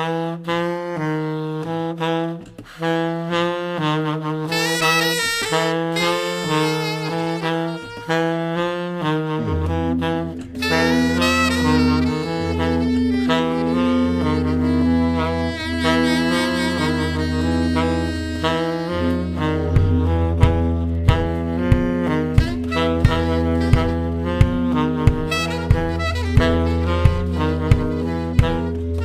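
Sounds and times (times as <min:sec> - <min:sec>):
lively instrumental melody: 0:00.0 - 0:29.0
held deep bass note: 0:06.0 - 0:29.0.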